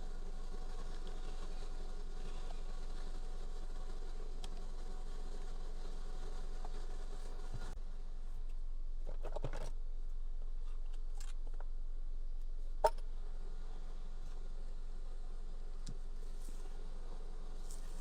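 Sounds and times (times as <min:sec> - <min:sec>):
steady low hum: 0:00.0 - 0:18.0
rustle of hand work: 0:15.8 - 0:18.0.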